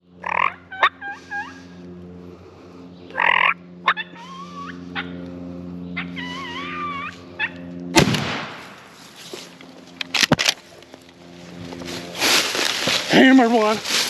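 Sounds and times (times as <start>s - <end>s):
steady low hum: 0.0s - 14.0s
wild turkey gobbling: 0.2s - 1.8s, 3.1s - 5.3s, 6.0s - 7.6s
songbirds whistling: 2.9s - 7.6s.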